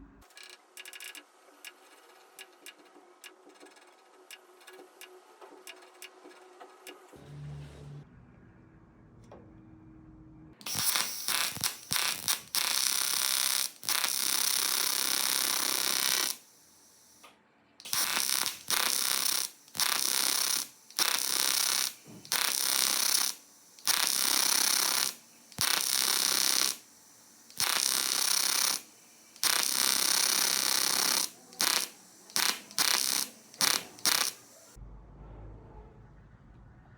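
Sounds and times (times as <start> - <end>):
welding arc buzzing: 10.6 - 34.8.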